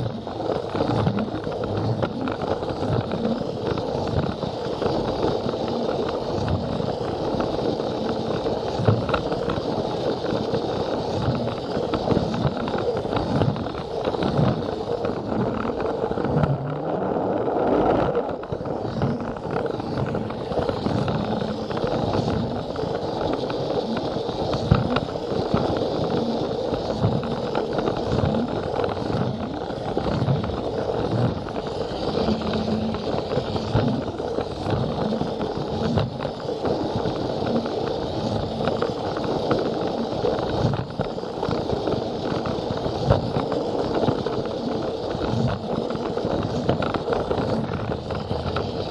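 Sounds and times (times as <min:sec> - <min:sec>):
small toy motor droning: 0:00.0 - 0:48.9.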